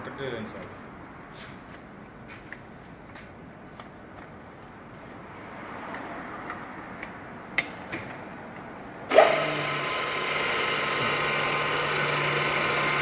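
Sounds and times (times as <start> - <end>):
milling machine motor whine: 9.1 - 13.0.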